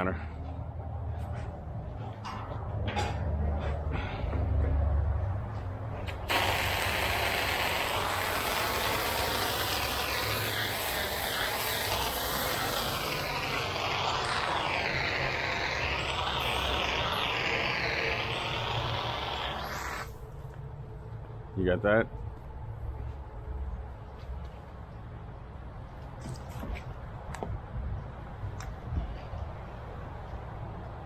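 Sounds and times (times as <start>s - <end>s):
water spray hissing on concrete: 6.3s - 20.2s.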